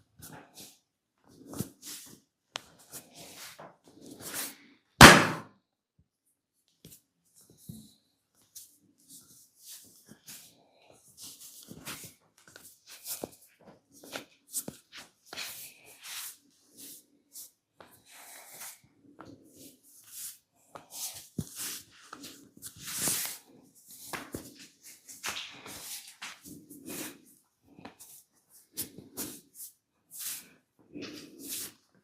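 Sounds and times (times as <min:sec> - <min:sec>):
hands rubbing and patting skin: 0:11.2 - 0:31.9.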